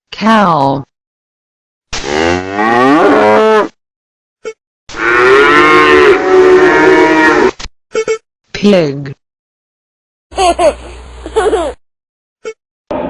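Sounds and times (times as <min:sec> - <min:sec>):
cow mooing: 0:02.2 - 0:03.7, 0:05.0 - 0:07.5.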